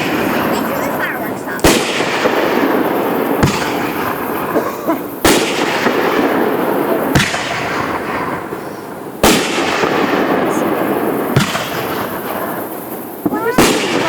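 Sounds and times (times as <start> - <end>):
fireworks booming: 0.0 - 14.0.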